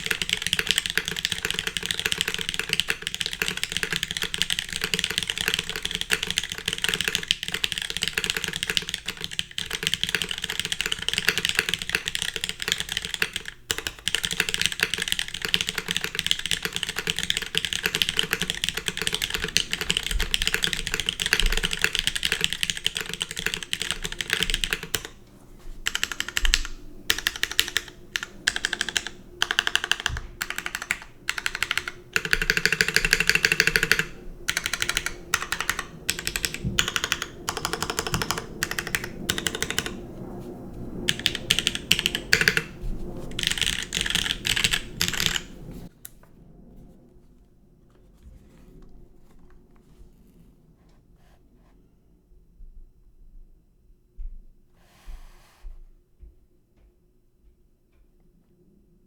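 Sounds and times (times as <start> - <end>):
mechanical keyboard typing: 0.0 - 25.2, 25.8 - 45.9.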